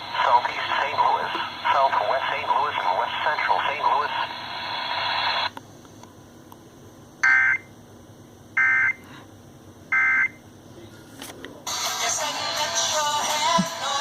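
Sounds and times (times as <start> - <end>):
music: 11.7 - 14.0.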